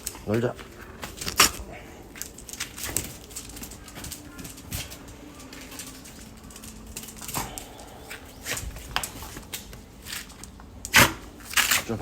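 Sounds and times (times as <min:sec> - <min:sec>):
pigeon cooing: 0:00.0 - 0:12.0.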